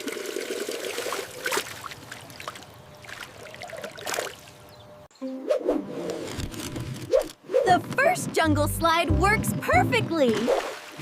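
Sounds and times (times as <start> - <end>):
water splashing into a pool: 0.0 - 4.6.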